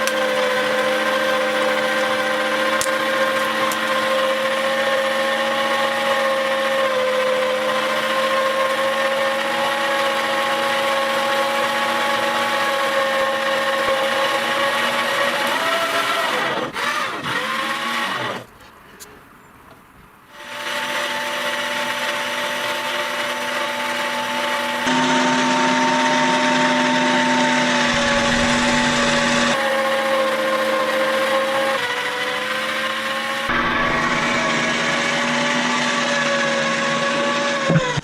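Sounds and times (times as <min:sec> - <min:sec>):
meat grinder motor humming: 0:00.0 - 0:18.2, 0:20.3 - 0:38.0.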